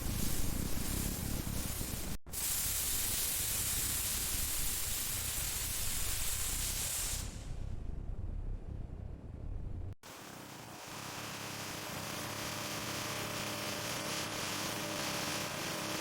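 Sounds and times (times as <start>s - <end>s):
spraying hiss: 0.0s - 7.5s.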